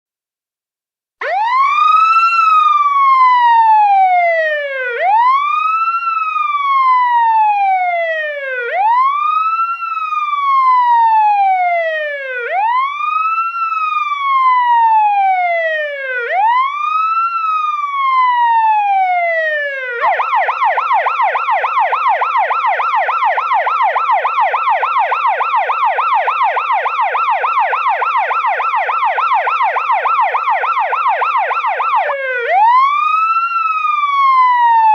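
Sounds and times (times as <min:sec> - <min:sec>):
police siren wailing: 0:01.2 - 0:34.9
police siren yelping: 0:01.2 - 0:34.9.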